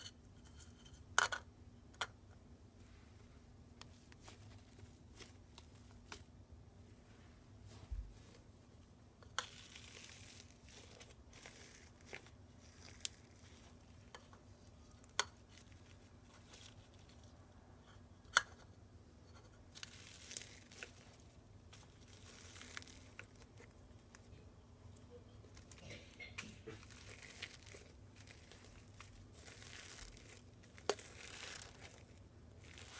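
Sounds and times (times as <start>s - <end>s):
crunchy slime popping and crackling: 9.3s - 17.3s, 19.7s - 24.4s, 25.4s - 32.9s.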